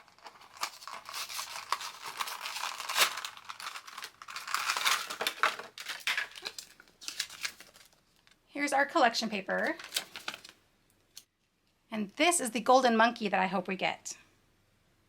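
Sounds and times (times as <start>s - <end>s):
toy packaging crinkling and tearing: 0.0s - 8.4s, 9.5s - 10.6s.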